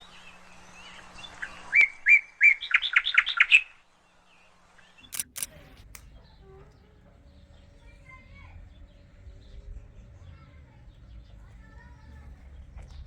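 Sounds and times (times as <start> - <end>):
songbird singing: 0.0 - 13.0
sharp clicks: 5.0 - 6.1.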